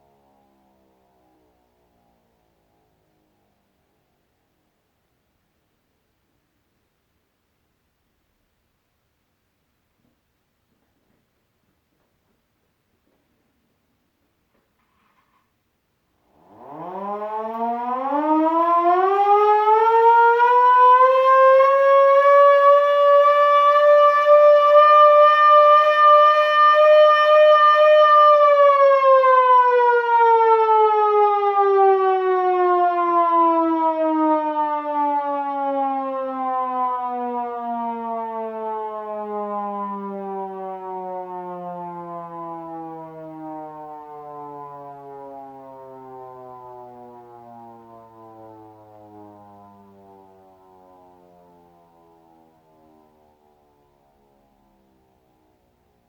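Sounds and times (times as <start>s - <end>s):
tornado siren wailing: 16.3s - 54.3s.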